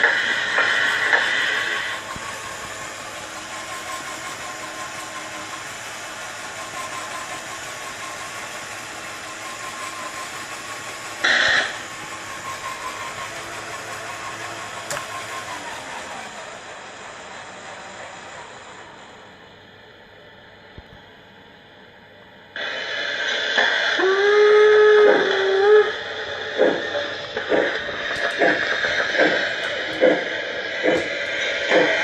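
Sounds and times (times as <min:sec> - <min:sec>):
loud burst of noise: 0:00.0 - 0:18.0, 0:22.6 - 0:32.0
small electric motor humming: 0:24.0 - 0:25.9.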